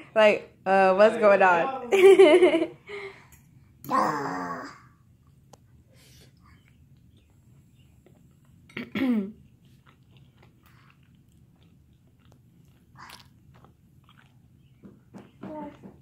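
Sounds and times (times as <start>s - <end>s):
faint chewing and mouth clicks: 5.2s - 15.9s.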